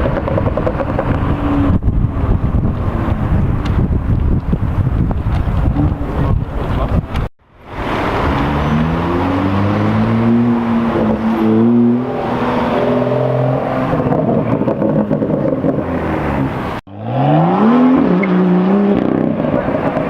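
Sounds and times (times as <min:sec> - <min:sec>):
car engine accelerating: 0:07.7 - 0:20.0.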